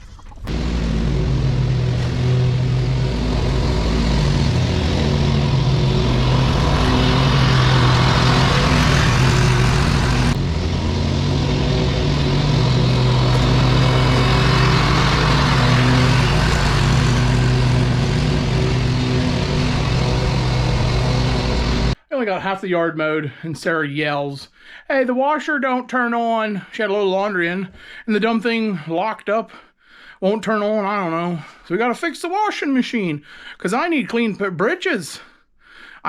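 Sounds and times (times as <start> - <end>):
lawn mower engine running: 0.5 - 22.0.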